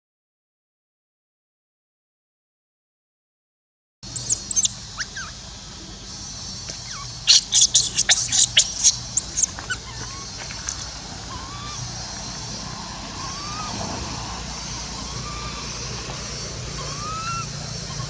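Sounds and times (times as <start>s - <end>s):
infant monkey squealing cries: 4.1s - 5.4s, 6.8s - 10.7s, 11.3s - 12.0s, 12.7s - 13.9s, 14.6s - 18.0s.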